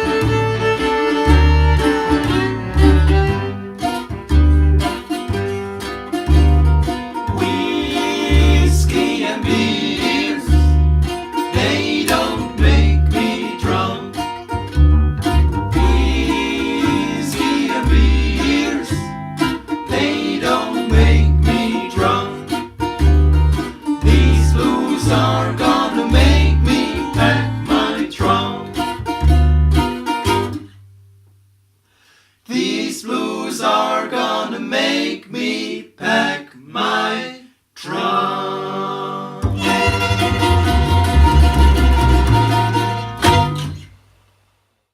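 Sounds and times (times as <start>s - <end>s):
picked guitar: 0.0s - 30.7s, 39.4s - 43.9s
banjo: 0.0s - 30.8s, 39.4s - 44.0s
bass line: 0.0s - 31.4s, 39.4s - 43.9s.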